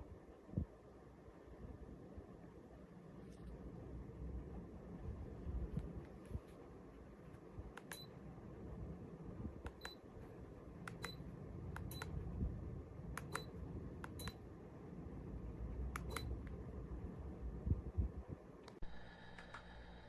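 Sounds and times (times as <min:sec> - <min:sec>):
low steady hum: 0:00.0 - 0:20.0
remote control button presses: 0:07.7 - 0:08.1, 0:09.6 - 0:10.0, 0:10.8 - 0:12.2, 0:13.1 - 0:14.4, 0:16.0 - 0:16.5.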